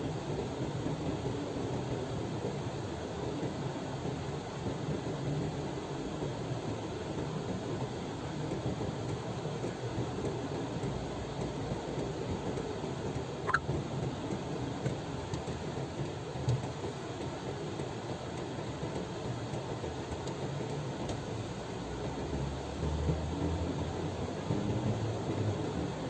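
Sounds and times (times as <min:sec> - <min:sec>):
engine and road rumble: 0:05.8 - 0:26.0.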